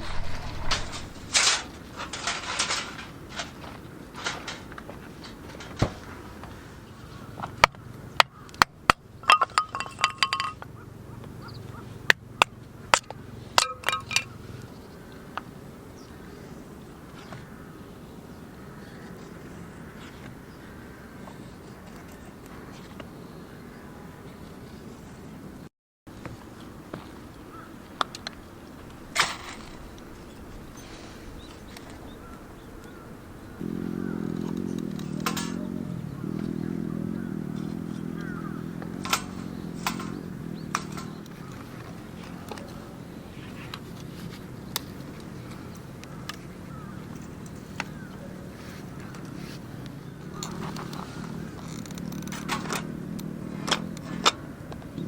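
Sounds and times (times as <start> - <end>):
low background noise: 0.0 - 55.0
faint bird chirps: 30.1 - 41.9.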